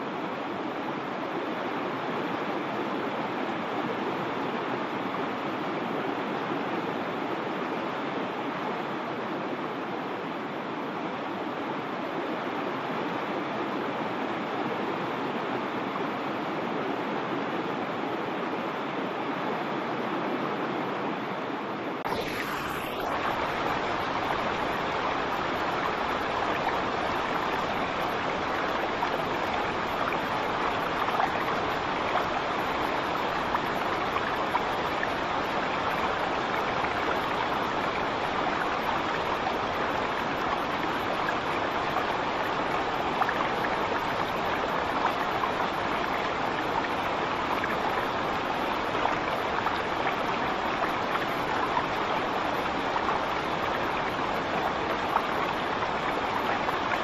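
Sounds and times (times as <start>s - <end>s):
waterfall rushing: 22.0s - 57.0s.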